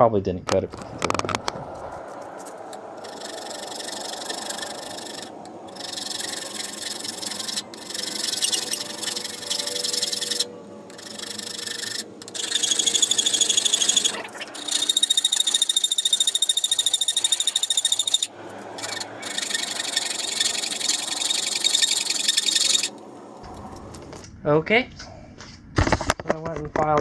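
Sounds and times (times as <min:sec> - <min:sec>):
hand file rasping on metal tube: 0:02.4 - 0:23.0.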